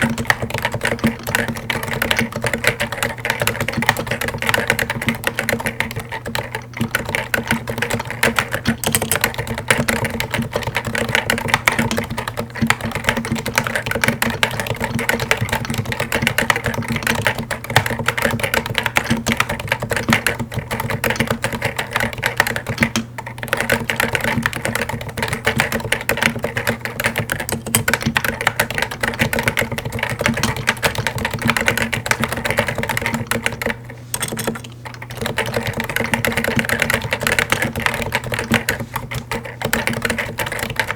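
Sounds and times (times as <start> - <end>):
keyboard typing: 0.0 - 40.9.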